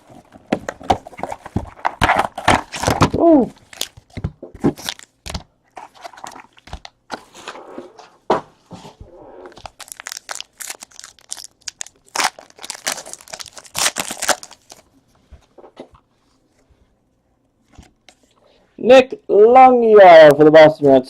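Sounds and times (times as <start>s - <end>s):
card wrappers tearing and crinkling: 0.0s - 6.9s, 9.5s - 14.8s.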